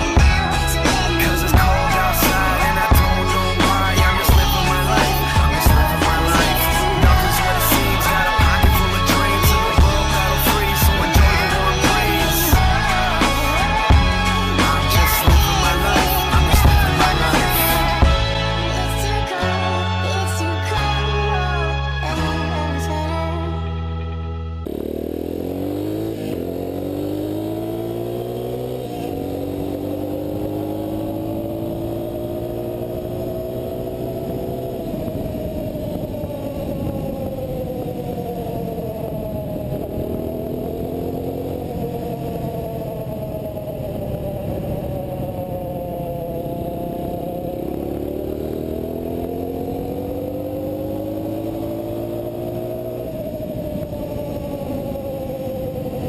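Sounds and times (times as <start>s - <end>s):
motorcycle engine shifting gears: 24.6s - 56.0s.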